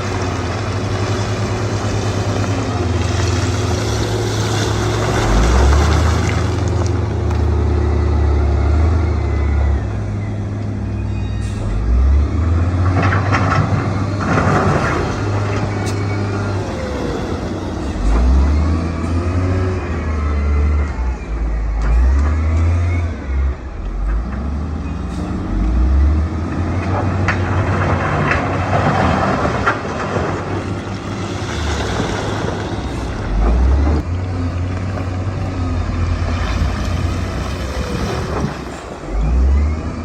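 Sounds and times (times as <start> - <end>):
diesel engines revving: 0.0 - 40.0.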